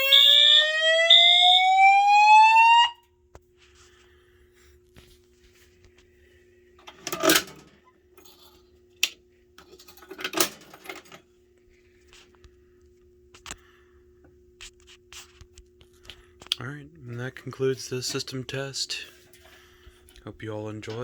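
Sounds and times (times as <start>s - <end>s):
faint steady hum: 2.9s - 21.0s
hard objects clicking and clattering: 6.8s - 8.6s, 9.6s - 11.2s.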